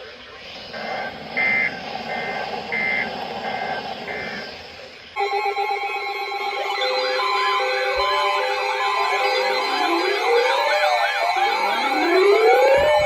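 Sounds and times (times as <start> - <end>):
radio hiss: 0.0 - 5.2
warbling electronic alert signal: 0.6 - 4.5.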